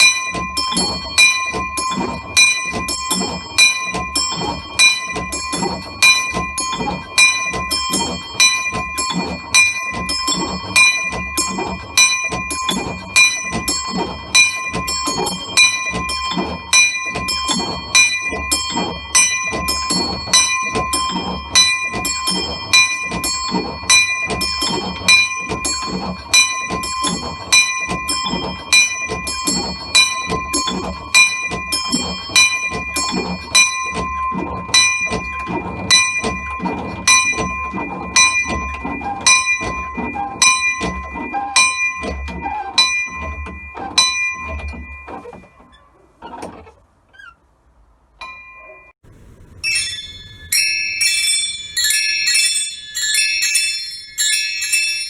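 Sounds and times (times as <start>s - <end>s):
small bells chiming: 0.0s - 34.0s, 49.6s - 55.0s
high-pitched peal of bells: 0.0s - 42.1s, 48.3s - 55.0s.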